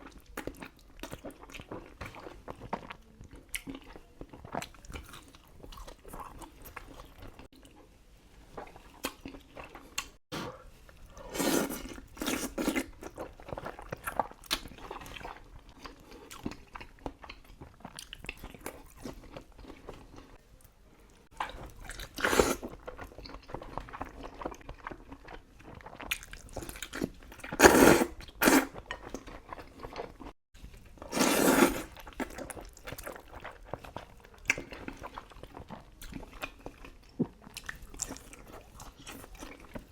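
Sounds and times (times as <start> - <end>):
chewing and wet mouth sounds: 0.0 - 39.9
loud eating bursts: 31.1 - 32.0.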